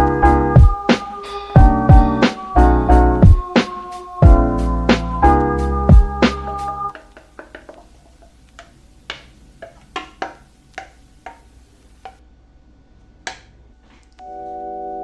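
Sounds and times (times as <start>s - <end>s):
piano music: 0.0s - 6.9s, 14.2s - 15.0s
utensils tapping on dishes: 6.9s - 11.5s.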